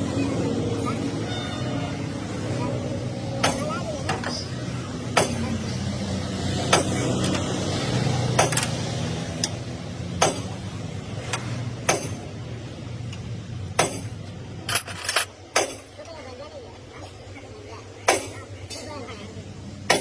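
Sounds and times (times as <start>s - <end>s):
hammer striking metal: 5.1s - 5.6s, 6.7s - 7.4s, 8.4s - 8.7s, 10.2s - 10.6s, 11.3s - 12.3s, 13.7s - 15.9s.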